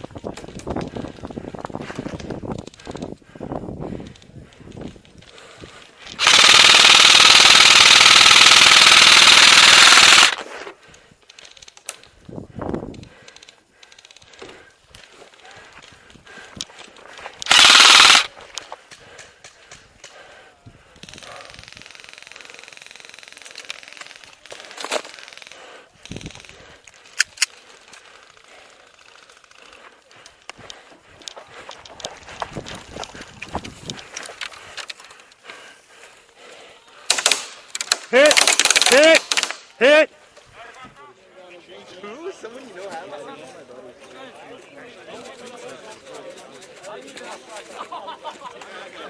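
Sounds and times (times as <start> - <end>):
airsoft rifle full-auto burst: 6.2 - 10.4, 17.4 - 18.3, 37.1 - 40.0.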